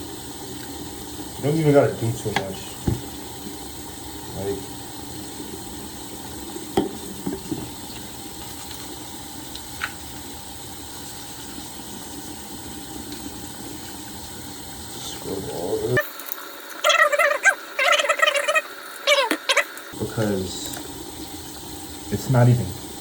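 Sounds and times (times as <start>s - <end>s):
wet toothbrush scrubbing: 16.7s - 20.0s.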